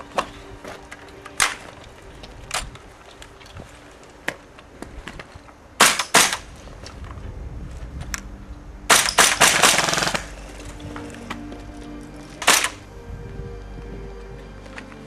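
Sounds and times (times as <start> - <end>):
airsoft guns firing: 5.8 - 6.5, 8.9 - 10.5, 12.4 - 12.8.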